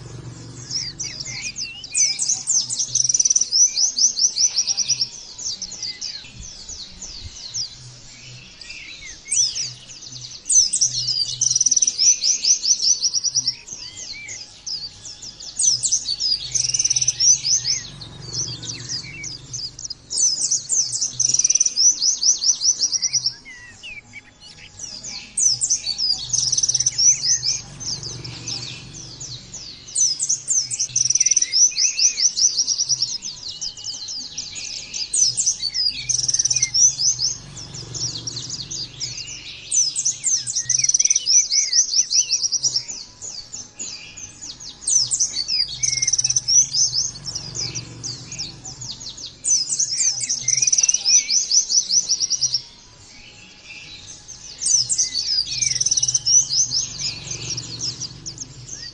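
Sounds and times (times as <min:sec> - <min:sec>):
bird twittering song: 0:00.0 - 0:58.9
faint low hum: 0:24.8 - 0:31.2.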